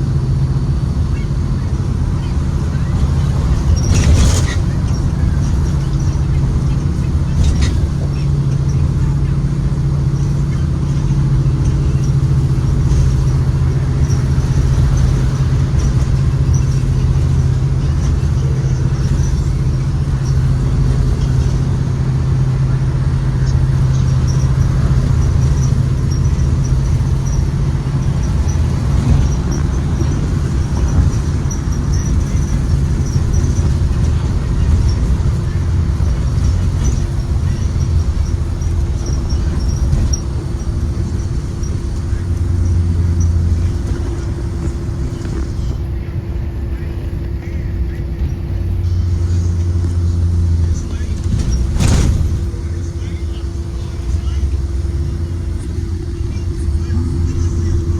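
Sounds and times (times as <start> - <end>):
bus engine humming: 0.0 - 57.9
road noise: 0.0 - 57.9.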